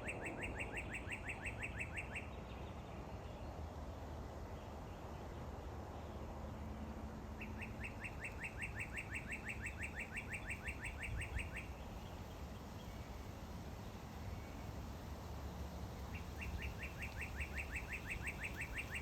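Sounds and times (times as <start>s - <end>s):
bird calling: 0.0s - 2.4s, 7.4s - 12.2s, 16.1s - 19.0s.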